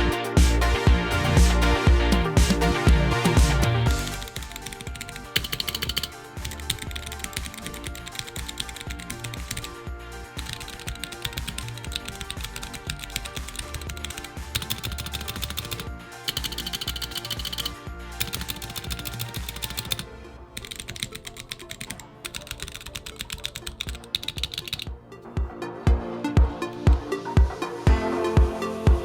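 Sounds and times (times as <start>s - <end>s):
background music: 0.0s - 29.0s
fast typing on mechanical keyboard: 3.9s - 24.9s.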